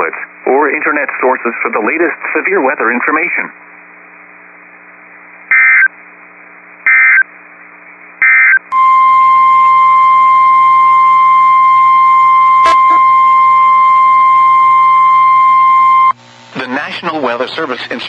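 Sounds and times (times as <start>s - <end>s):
steady alarm tone: 8.2s - 16.2s.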